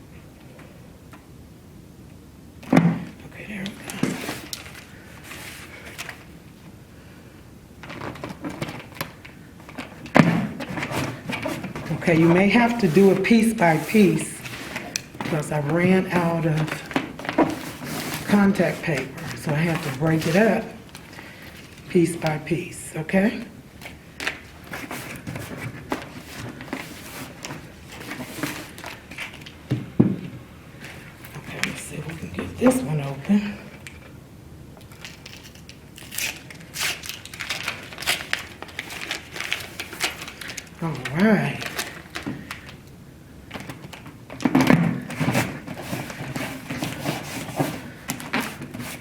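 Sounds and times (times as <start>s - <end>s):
paper and cardboard crinkling: 3.4s - 6.4s, 7.8s - 22.4s, 23.8s - 29.6s, 34.9s - 42.8s, 43.4s - 49.0s.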